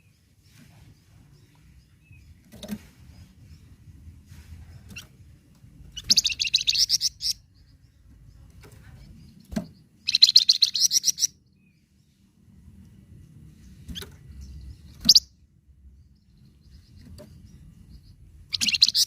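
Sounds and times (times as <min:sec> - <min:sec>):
songbird chattering trills: 0:03.0 - 0:11.4, 0:16.2 - 0:19.0.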